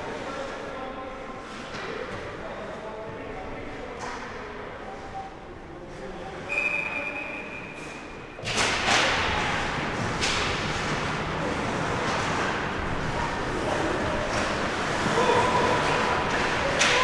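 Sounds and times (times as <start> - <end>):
referee whistle: 6.5 - 7.9.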